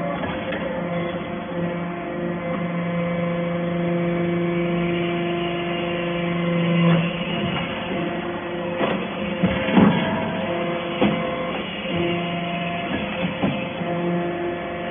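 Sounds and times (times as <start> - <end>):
machine hum: 0.0 - 14.9
rough machine clatter: 6.7 - 14.0.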